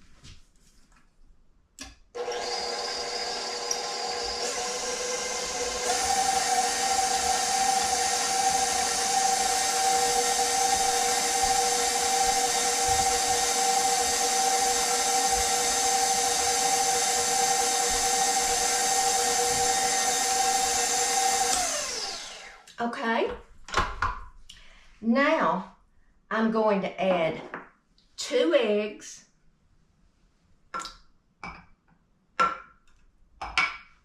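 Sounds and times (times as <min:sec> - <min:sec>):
electric mixer motor whine: 0:02.2 - 0:22.8.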